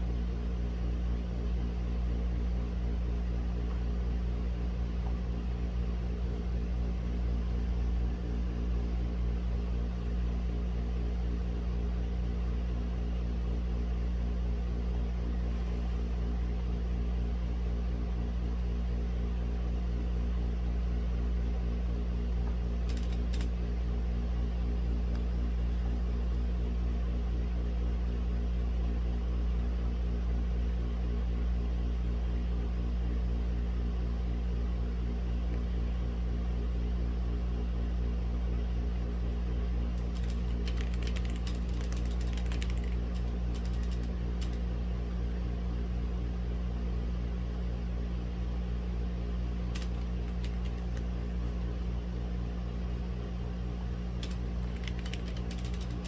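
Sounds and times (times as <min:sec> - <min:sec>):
low machine hum: 0:00.0 - 0:56.0
faint clicks: 0:22.9 - 0:23.5, 0:40.0 - 0:44.6, 0:49.7 - 0:51.2, 0:54.2 - 0:56.0.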